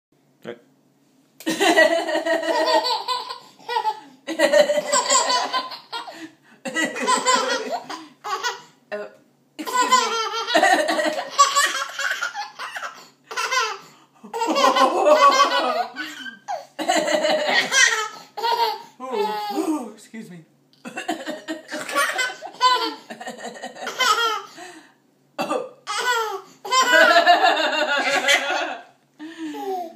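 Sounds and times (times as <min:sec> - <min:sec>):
baby laughing: 0:01.9 - 0:08.7, 0:09.6 - 0:19.7, 0:21.0 - 0:24.5, 0:25.8 - 0:28.8, 0:29.5 - 0:29.9
woman coughing: 0:25.4 - 0:25.8.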